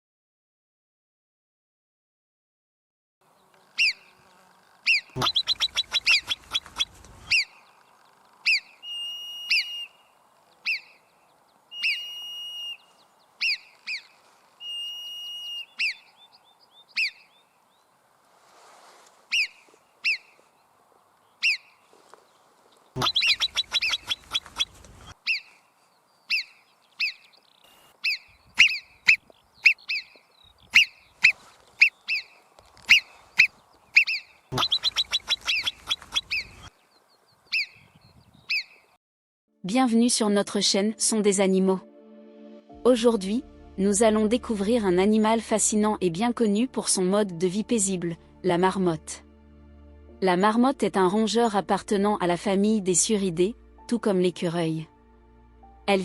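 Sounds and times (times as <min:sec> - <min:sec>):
marmot alarm whistles: 0:04.9 - 0:07.5, 0:08.5 - 0:10.0, 0:11.7 - 0:14.0, 0:14.6 - 0:16.1, 0:23.0 - 0:25.4, 0:26.3 - 0:30.1, 0:30.7 - 0:32.3, 0:32.9 - 0:33.1, 0:34.0 - 0:36.7.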